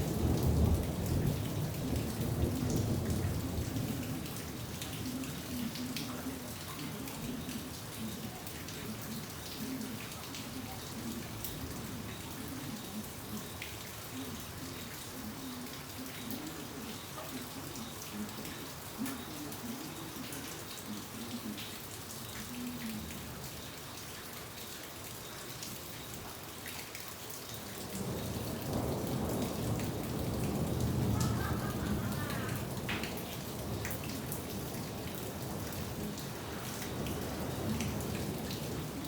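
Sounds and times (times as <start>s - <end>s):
rain falling: 0.0s - 39.0s
raindrops ticking: 0.0s - 39.0s
thunder rumble: 28.0s - 39.0s.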